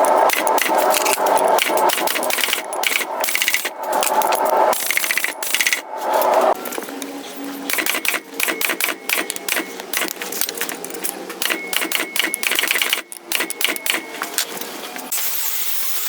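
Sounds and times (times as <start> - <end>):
metal clicking and tapping: 0.0 - 5.8, 7.7 - 14.5.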